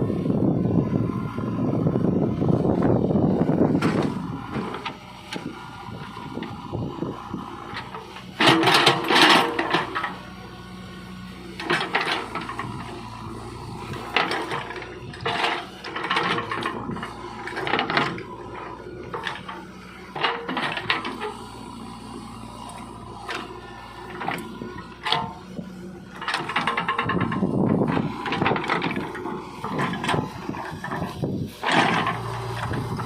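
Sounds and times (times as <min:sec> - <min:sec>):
diesel engine running: 0:00.0 - 0:33.0
metallic clatter and scraping: 0:07.6 - 0:10.2, 0:11.6 - 0:13.0, 0:13.7 - 0:21.5, 0:22.6 - 0:33.0.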